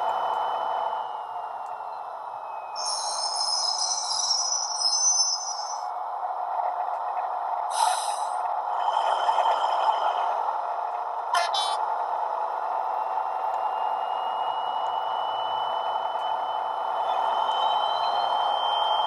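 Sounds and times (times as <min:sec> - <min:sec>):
high whistle rising in pitch: 0:02.4 - 0:05.9.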